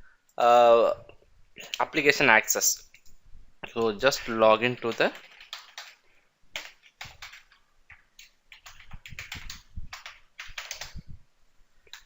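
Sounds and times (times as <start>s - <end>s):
computer keyboard typing: 3.8s - 11.1s.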